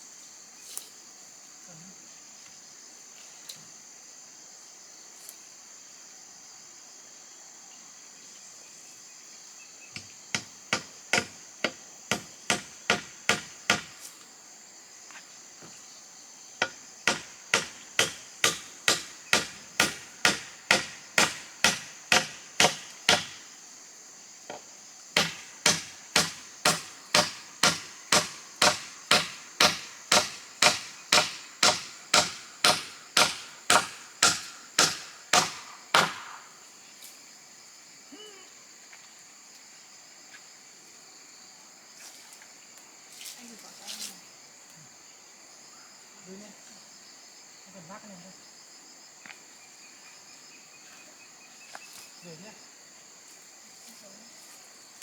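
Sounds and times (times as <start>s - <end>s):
insects droning: 0.0s - 55.0s
hammer blows on wood: 16.6s - 23.4s, 25.2s - 36.4s.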